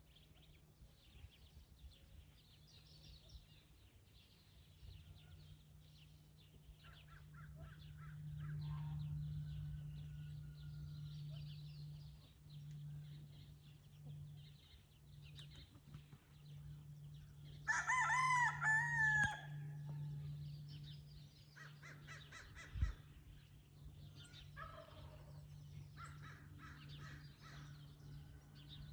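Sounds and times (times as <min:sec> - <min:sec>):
steady low hum: 0:00.0 - 0:28.9
rooster crowing: 0:17.6 - 0:19.7.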